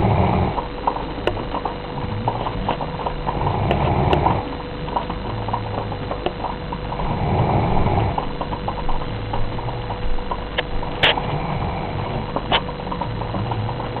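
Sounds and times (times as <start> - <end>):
dog snoring: 0.0 - 1.0, 1.6 - 10.2.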